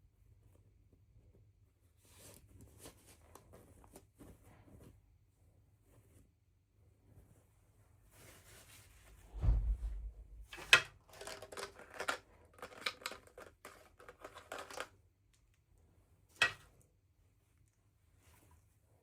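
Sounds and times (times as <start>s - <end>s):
low thump: 9.1s - 10.7s.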